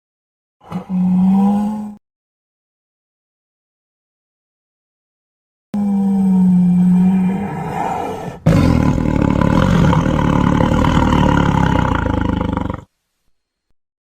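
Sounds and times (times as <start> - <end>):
cat growling: 6.5 - 12.9.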